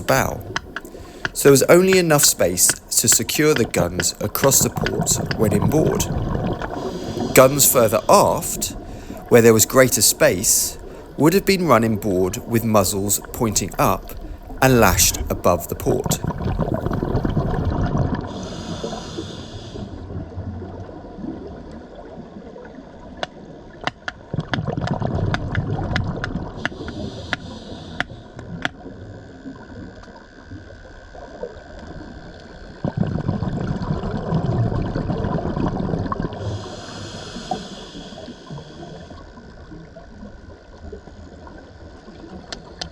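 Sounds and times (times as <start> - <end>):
sharp clicks: 0.0 - 8.4
bubbling exhale: 0.0 - 9.4, 10.7 - 11.2, 16.0 - 20.0, 26.6 - 28.2, 32.9 - 39.2
regulator hissing inhale: 0.4 - 1.4, 6.6 - 9.4, 10.8 - 11.2, 18.3 - 20.0, 26.6 - 28.4, 36.4 - 39.4.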